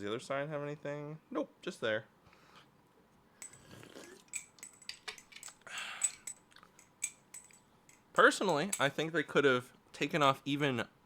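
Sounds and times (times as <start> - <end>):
metal knife clicking and clinking: 4.3 - 8.9.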